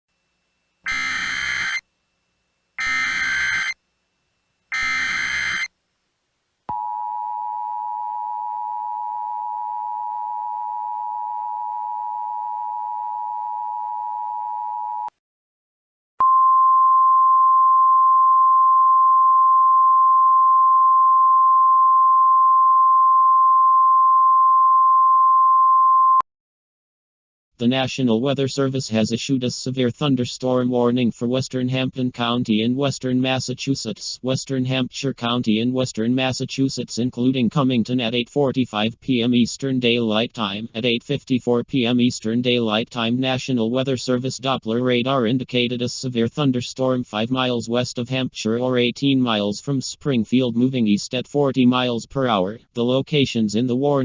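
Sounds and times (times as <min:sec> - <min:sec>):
buzzy digital data bursts: 0:00.9 - 0:01.8, 0:02.8 - 0:03.8, 0:04.7 - 0:05.7
steady alert tone: 0:00.9 - 0:01.8, 0:02.8 - 0:03.8, 0:04.7 - 0:05.7
two-tone attention signal: 0:00.9 - 0:01.8, 0:02.8 - 0:03.8, 0:04.7 - 0:05.7.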